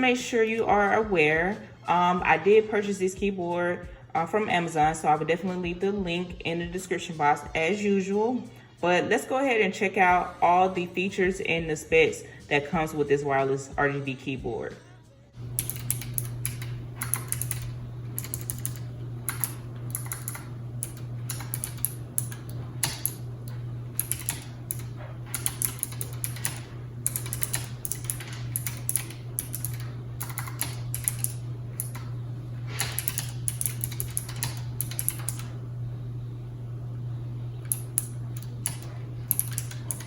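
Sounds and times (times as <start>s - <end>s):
low background hum: 0.0s - 40.0s
mechanical keyboard key clicks: 15.6s - 23.2s, 24.0s - 32.1s, 32.8s - 35.5s, 37.7s - 40.0s.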